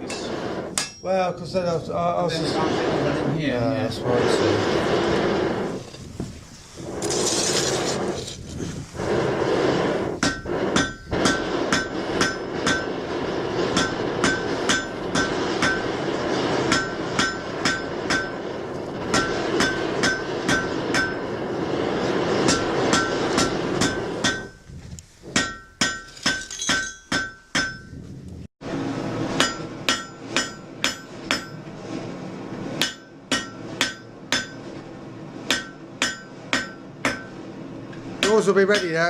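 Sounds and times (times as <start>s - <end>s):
hammer striking iron on anvil: 0.0s - 1.1s, 10.2s - 12.9s, 13.8s - 15.9s, 16.7s - 18.4s, 19.1s - 21.3s, 22.5s - 24.6s, 25.3s - 27.9s, 29.4s - 31.6s, 32.8s - 34.6s, 35.5s - 37.4s, 38.2s - 39.0s
steady rushing noise: 0.0s - 26.0s, 27.2s - 39.0s.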